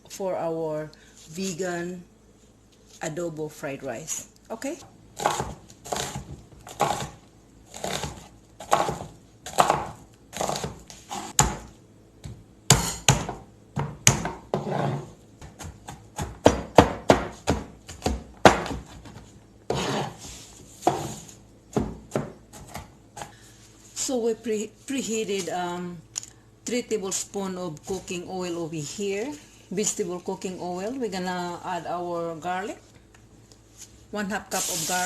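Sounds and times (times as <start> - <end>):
knife chopping on cutting board: 5.2 - 7.2, 7.8 - 20.1, 20.8 - 23.3.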